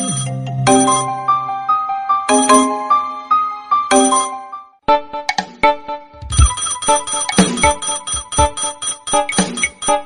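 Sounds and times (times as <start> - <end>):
smartphone ringtone melody: 0.0 - 1.4, 2.3 - 2.9, 3.9 - 4.5, 6.2 - 10.0.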